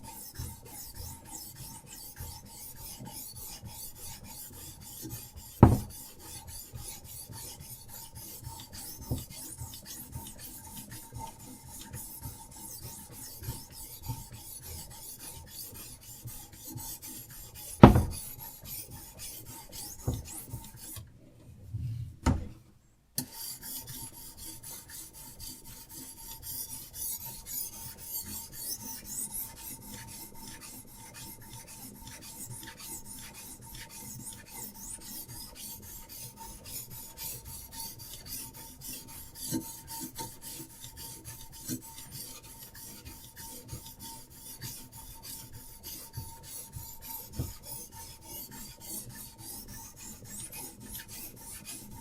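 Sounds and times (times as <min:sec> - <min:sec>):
sharp knock: 0:05.6 - 0:05.9, 0:17.8 - 0:18.2.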